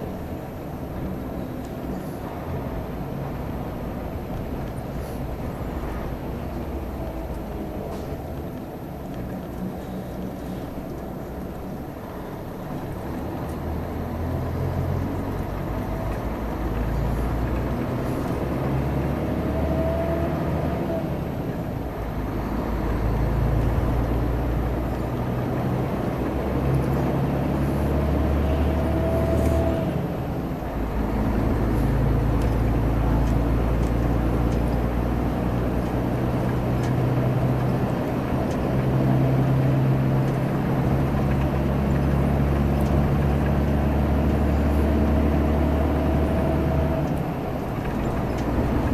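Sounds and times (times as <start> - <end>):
bus diesel engine growling: 0.0 - 48.9.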